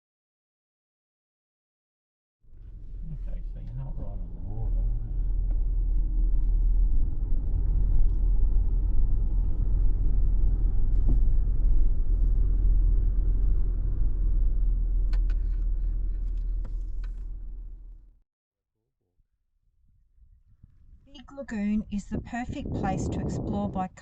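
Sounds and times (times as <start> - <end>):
vehicle engine and tyres rumbling: 2.5 - 18.1.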